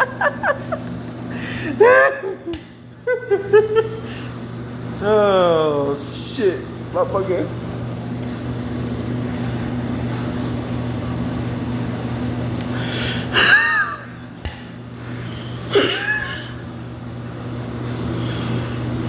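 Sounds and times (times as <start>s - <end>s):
machine hum: 0.0s - 19.0s.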